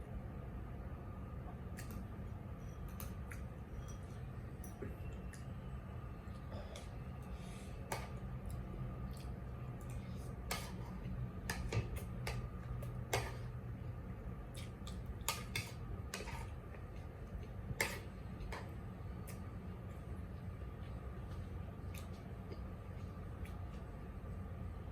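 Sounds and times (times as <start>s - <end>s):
steady low hum: 0.0s - 24.9s
cutlery tapping on a plate: 11.4s - 12.5s, 13.1s - 13.5s.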